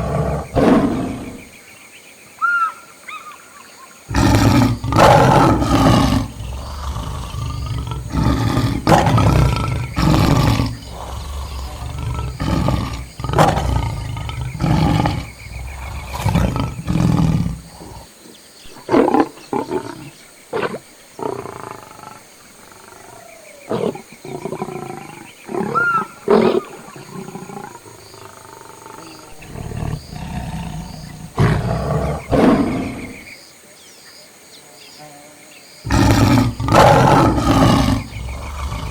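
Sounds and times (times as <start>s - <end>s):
lions roaring and growling: 0.0s - 1.5s, 4.1s - 18.1s, 18.8s - 33.2s, 35.9s - 38.9s.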